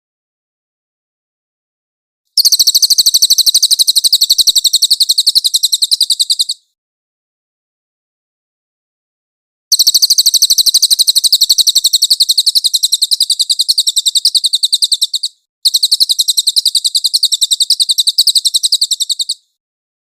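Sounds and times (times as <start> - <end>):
bird trilling: 2.4 - 6.7, 9.7 - 19.5.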